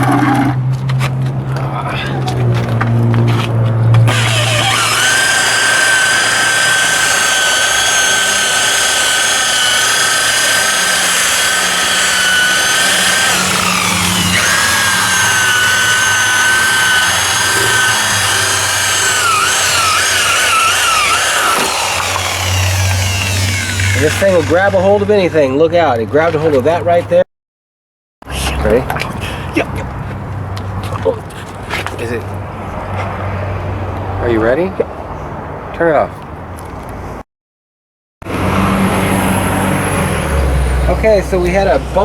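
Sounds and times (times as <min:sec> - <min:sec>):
power buffer whining: 0:04.1 - 0:24.8.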